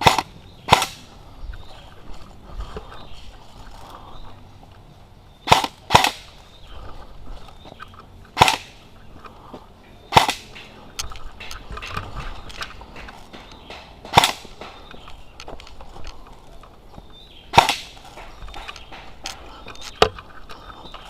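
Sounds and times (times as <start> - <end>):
airsoft rifle shots: 0.0 - 1.2, 5.4 - 6.4, 8.4 - 8.9, 10.1 - 14.9, 17.5 - 19.4.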